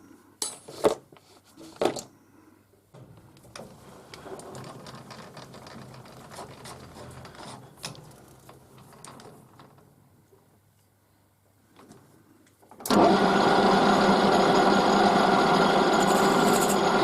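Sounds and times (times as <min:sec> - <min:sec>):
metal lathe humming: 0:12.9 - 0:17.0.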